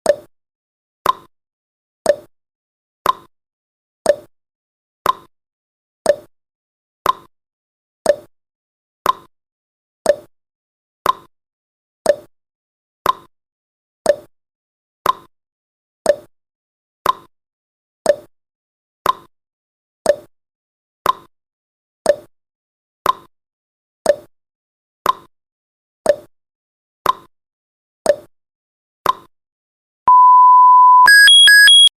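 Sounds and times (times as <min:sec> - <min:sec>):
high alarm tone: 0:30.1 - 0:31.9
steady beep: 0:30.1 - 0:31.9
timer ticking: 0:30.1 - 0:31.9.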